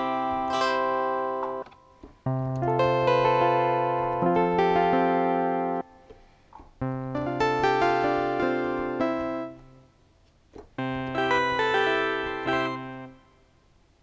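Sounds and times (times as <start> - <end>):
synthesizer piano chords: 2.3 - 6.0, 6.8 - 10.0, 10.8 - 13.4.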